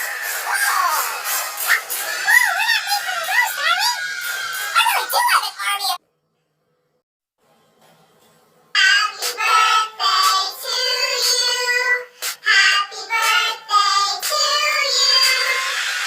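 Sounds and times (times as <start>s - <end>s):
children cheering and shouting: 0.0s - 6.0s.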